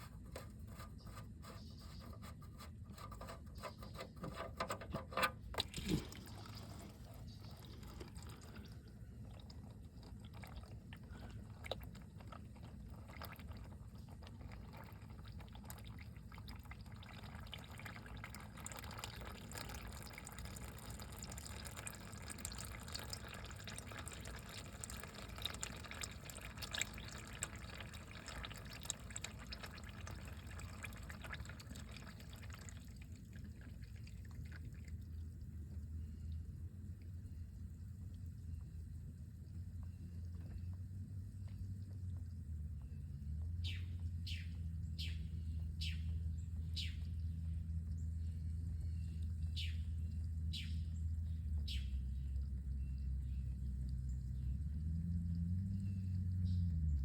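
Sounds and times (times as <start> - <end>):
sharp knocks and handling clatter: 2.4 - 5.7
liquid pouring and dripping: 3.0 - 42.8.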